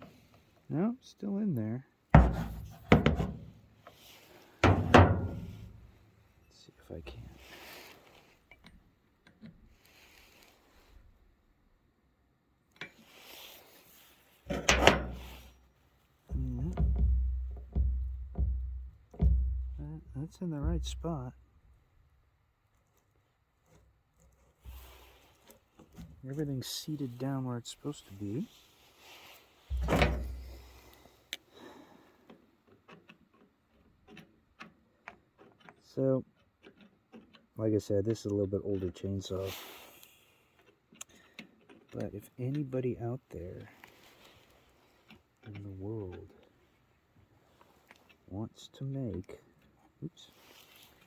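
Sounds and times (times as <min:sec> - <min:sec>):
low thud: 0:02.2 - 0:03.5, 0:04.6 - 0:05.9, 0:16.3 - 0:21.2, 0:29.7 - 0:30.8.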